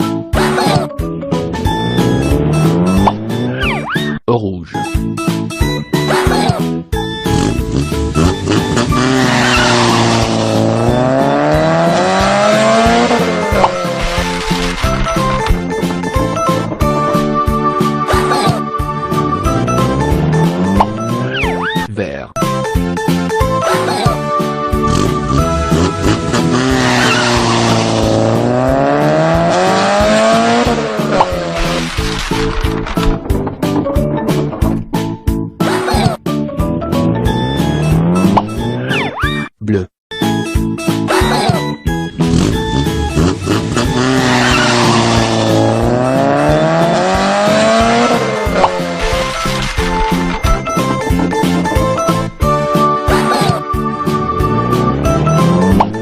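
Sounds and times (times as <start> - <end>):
children's music: 0.0 - 39.5, 40.1 - 56.0
car engine revving: 1.4 - 3.8, 7.1 - 21.6, 23.5 - 35.2, 36.8 - 38.9, 42.1 - 56.0
tyre squeal: 8.1 - 10.4, 26.7 - 27.8, 42.5 - 45.5.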